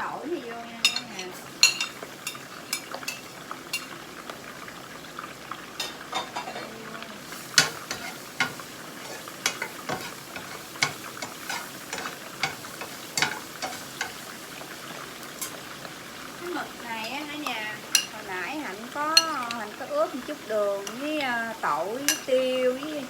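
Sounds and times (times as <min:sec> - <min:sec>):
garlic sizzling in hot oil: 0:00.0 - 0:23.0
utensil scraping pan: 0:07.4 - 0:15.6.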